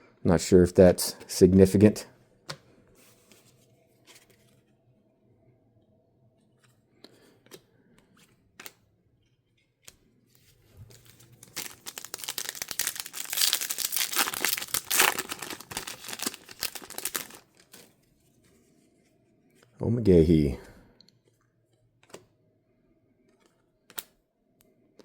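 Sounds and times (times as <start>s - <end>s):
foil wrapper tearing and crinkling: 10.9s - 17.9s.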